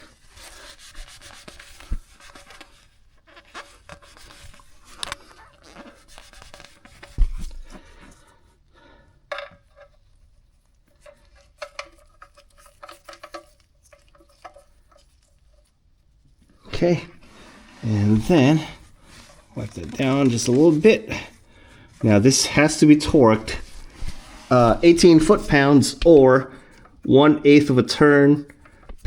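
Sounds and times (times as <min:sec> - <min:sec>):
rag rubbing and wiping: 0:00.0 - 0:08.3, 0:10.9 - 0:29.0
clicks and knocks of parts: 0:09.3 - 0:10.1, 0:10.9 - 0:15.2.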